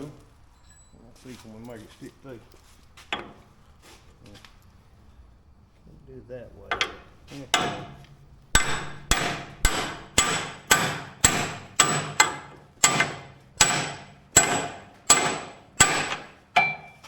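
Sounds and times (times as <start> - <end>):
hammer striking steel: 6.7 - 17.0.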